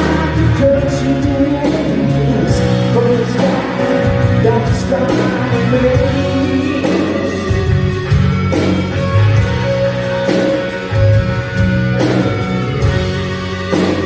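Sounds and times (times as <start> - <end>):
bass guitar: 0.0 - 14.0
drums: 0.0 - 14.0
guitars: 0.0 - 14.0.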